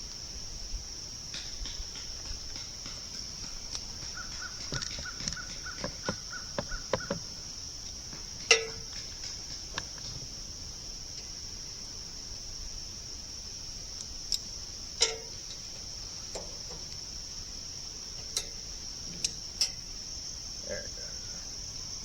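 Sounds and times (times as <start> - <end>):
crickets chirping: 0.0 - 22.0
light clicks and knocks: 1.4 - 7.3.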